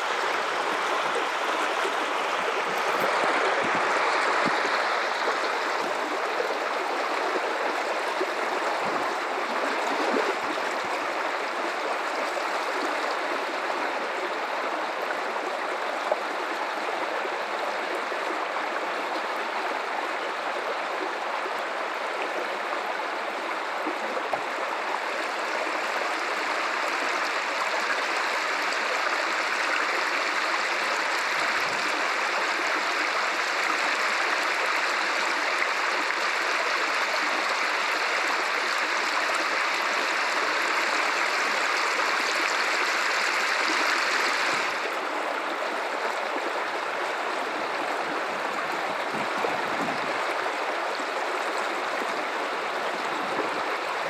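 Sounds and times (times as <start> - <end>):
water rushing over rocks: 0.0 - 54.0.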